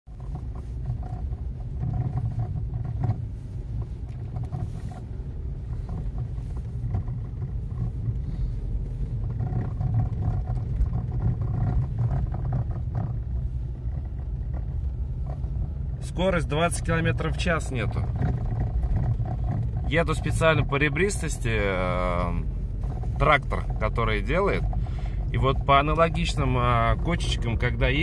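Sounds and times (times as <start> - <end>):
road rumble inside car: 0.0 - 28.0
suspension knocks over bumps: 0.1 - 21.4.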